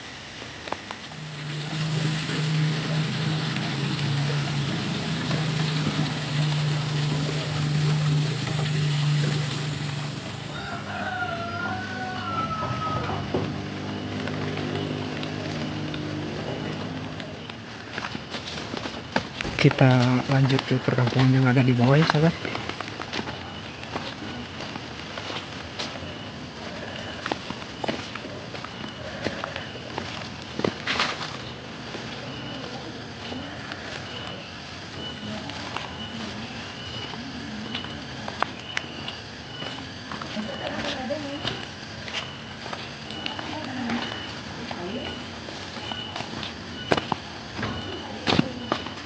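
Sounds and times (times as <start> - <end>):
engine humming: 0.0 - 49.0
footsteps on path: 0.6 - 49.0
rooster crowing: 5.3 - 14.1.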